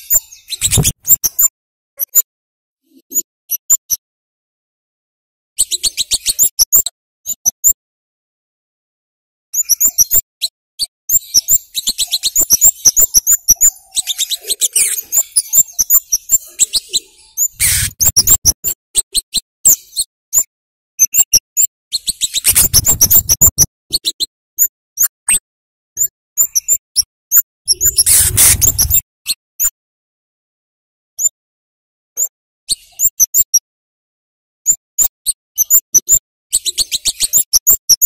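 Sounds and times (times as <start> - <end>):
bird calling in sharp chips: 10.8 - 25.1, 26.0 - 29.0.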